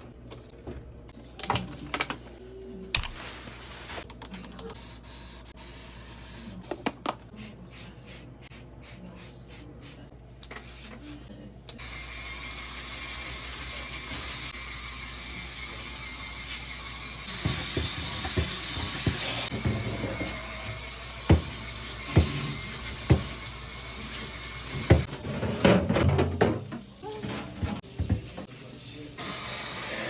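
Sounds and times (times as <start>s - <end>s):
containers clattering: 24.7s - 28.3s.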